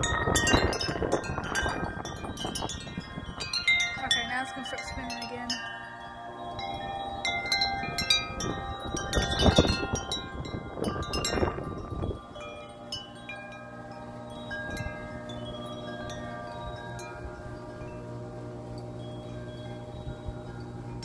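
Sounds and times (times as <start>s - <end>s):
rush of wind: 0.0s - 5.8s, 6.5s - 15.4s
wind chimes ringing: 0.0s - 21.0s.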